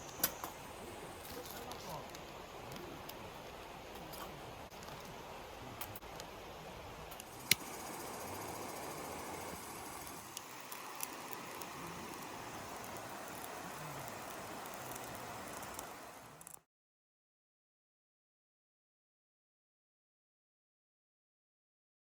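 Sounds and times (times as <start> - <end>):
campfire pops: 0.0 - 0.6, 10.0 - 16.6
campfire hissing: 0.0 - 16.6.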